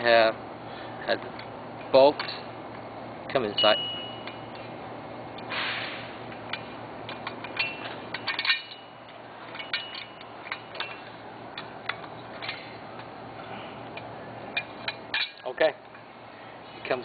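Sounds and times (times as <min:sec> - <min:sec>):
metal bolts clinking on metal frame: 0:01.4 - 0:02.5, 0:03.3 - 0:04.8, 0:06.3 - 0:13.2, 0:13.9 - 0:16.0
brief metallic rings: 0:03.6 - 0:04.6
short metal scrape: 0:05.5 - 0:06.1.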